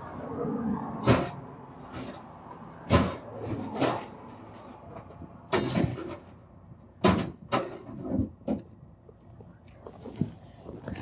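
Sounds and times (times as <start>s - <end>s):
sharp knocks and clunks: 1.0s - 2.2s, 2.8s - 4.2s, 5.1s - 6.3s, 7.0s - 8.7s.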